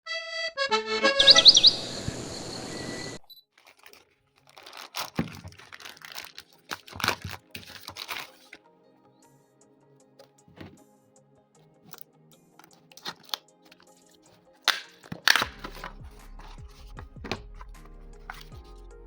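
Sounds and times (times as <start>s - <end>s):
chirping sound effect: 0.9s - 3.2s
parcel crinkling and clicking: 3.4s - 8.7s, 11.6s - 19.0s.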